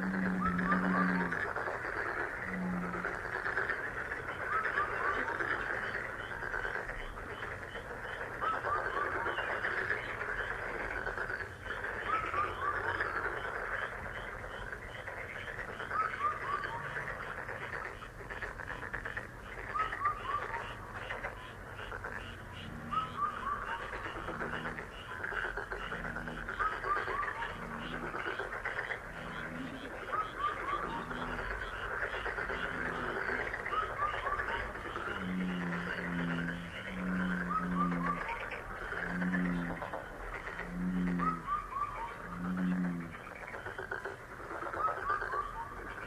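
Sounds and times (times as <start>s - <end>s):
frog chorus: 0.0s - 46.0s
rapid ticking calls: 0.0s - 46.0s.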